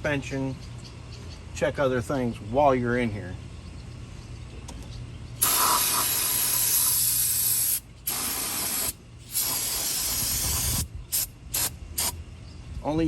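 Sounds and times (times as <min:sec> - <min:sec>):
aerosol can spraying: 0:05.4 - 0:12.1.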